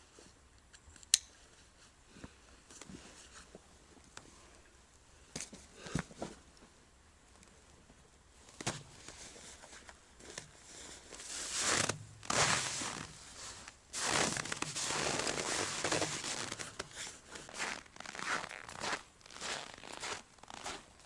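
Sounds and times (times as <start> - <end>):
rustling and tearing: 8.7 - 20.8.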